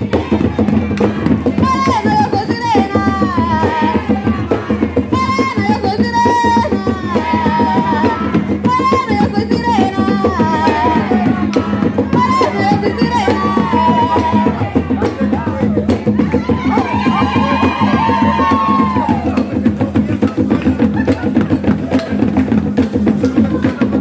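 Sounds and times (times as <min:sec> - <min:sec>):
folk drums beating: 0:00.0 - 0:24.0
person singing: 0:01.5 - 0:19.5.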